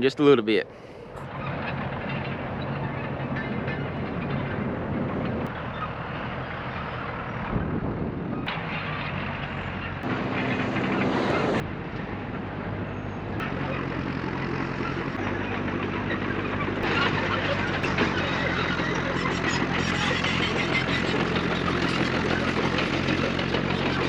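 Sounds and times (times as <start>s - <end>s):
vehicle engine humming: 0.0s - 24.0s.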